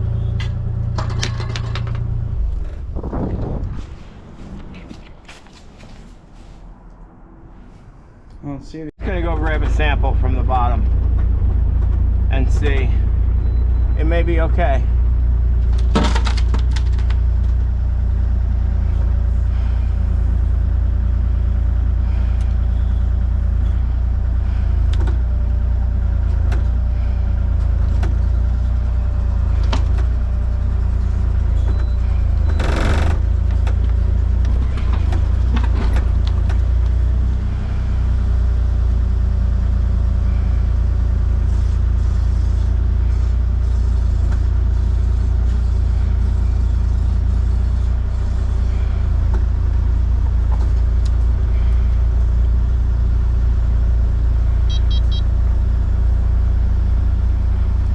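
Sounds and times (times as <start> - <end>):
knocks and clanks: 0.4 - 3.5, 15.6 - 17.6
large engine idling: 9.0 - 57.9.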